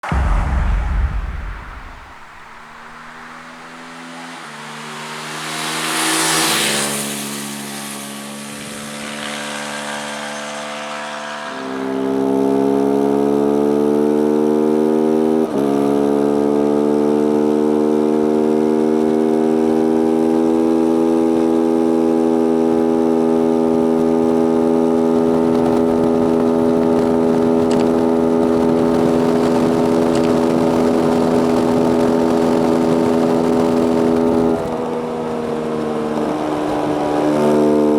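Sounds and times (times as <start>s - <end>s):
rush of noise: 0.0s - 8.1s
motorcycle engine accelerating: 0.0s - 37.9s.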